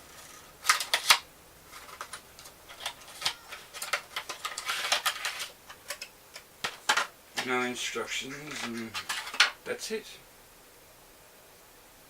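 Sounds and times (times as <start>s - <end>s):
packaging clicking and crackling: 0.2s - 7.5s.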